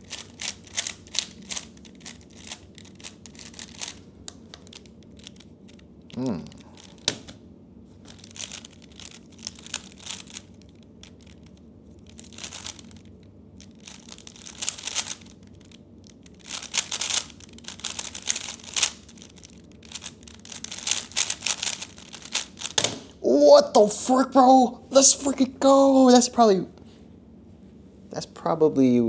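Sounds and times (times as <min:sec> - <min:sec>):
puzzle cube clicking and rattling: 0:00.0 - 0:07.4, 0:08.1 - 0:23.1.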